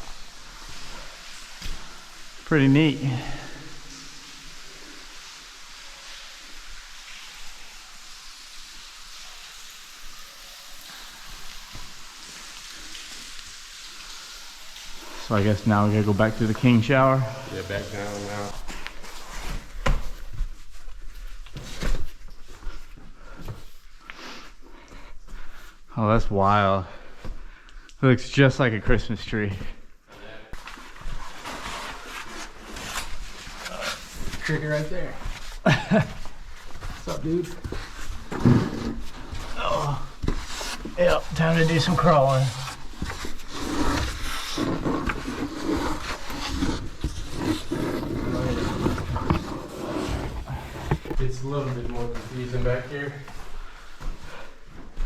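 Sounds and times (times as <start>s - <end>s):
gear scraping against rock: 43.5s - 51.3s.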